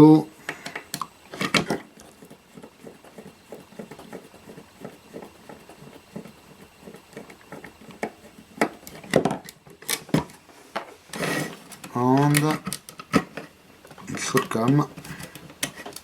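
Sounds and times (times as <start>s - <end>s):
screwdriver ticking and scraping: 0.5s - 10.2s, 11.1s - 16.0s.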